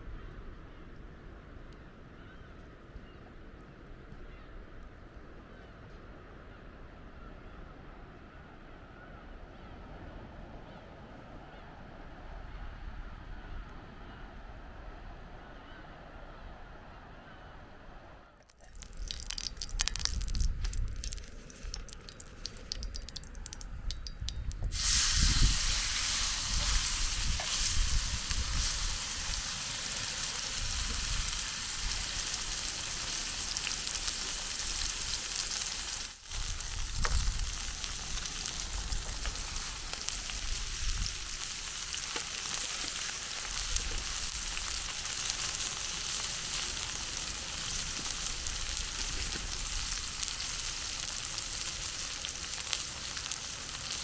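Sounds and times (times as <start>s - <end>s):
food sizzling in hot oil: 18.5s - 54.0s.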